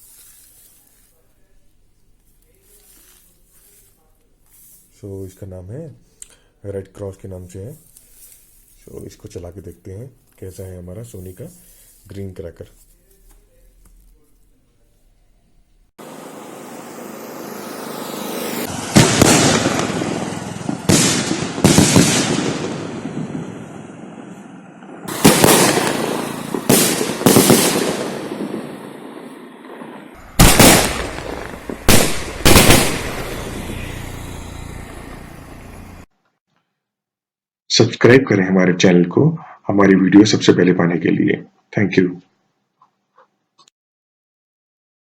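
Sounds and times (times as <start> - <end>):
firework rising hiss: 16.0 - 23.7, 25.1 - 29.5, 30.2 - 36.1
firework sharp bangs: 18.6 - 35.1.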